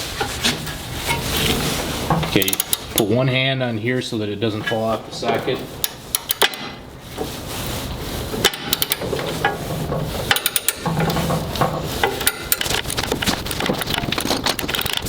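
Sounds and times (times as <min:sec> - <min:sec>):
socket wrench ratchet clicking: 0:02.4 - 0:03.1, 0:05.8 - 0:06.6, 0:08.5 - 0:09.0, 0:10.3 - 0:10.8.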